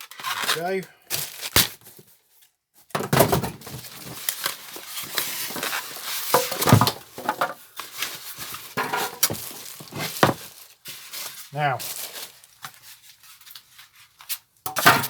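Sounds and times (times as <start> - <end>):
cardboard packaging rustling: 0.0 - 2.5, 3.2 - 14.6
knocks and clunks: 6.4 - 7.6.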